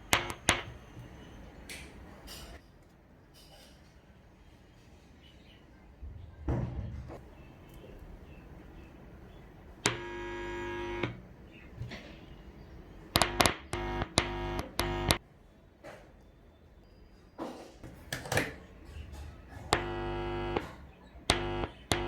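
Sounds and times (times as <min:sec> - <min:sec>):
buzzy electronic beeps: 0:00.0 - 0:00.8, 0:09.9 - 0:11.2, 0:13.2 - 0:15.2, 0:19.8 - 0:20.7, 0:21.3 - 0:22.0.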